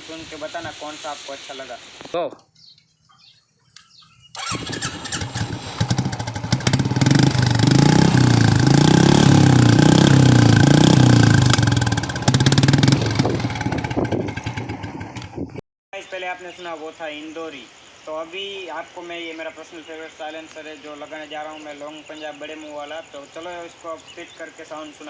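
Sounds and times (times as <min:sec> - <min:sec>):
motorcycle engine revving: 0:04.4 - 0:15.6.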